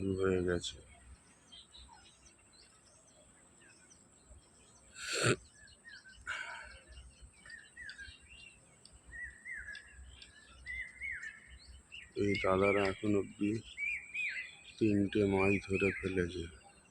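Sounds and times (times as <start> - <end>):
small birds chirping: 0.0 - 16.9.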